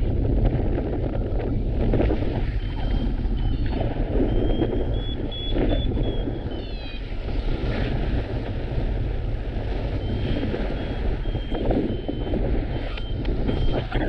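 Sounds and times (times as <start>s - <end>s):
wind buffeting microphone: 0.0s - 14.0s
variometer short beeps: 2.7s - 7.0s, 10.7s - 14.0s.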